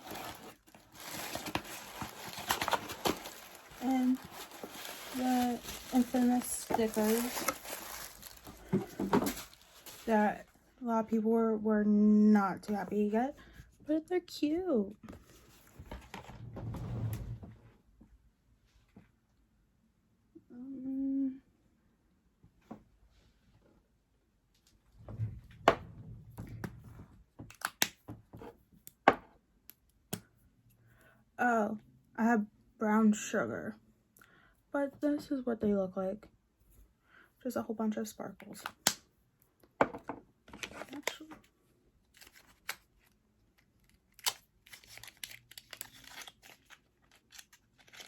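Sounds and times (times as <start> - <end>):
packaging rustling: 0.0 - 10.5, 42.1 - 48.0.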